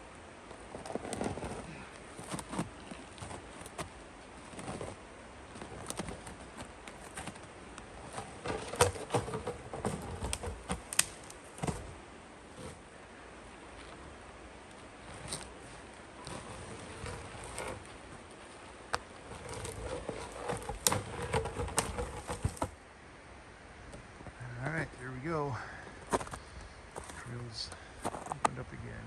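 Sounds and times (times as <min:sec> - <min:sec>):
knocks snaps and crackles: 0:02.2 - 0:12.0, 0:14.6 - 0:22.8.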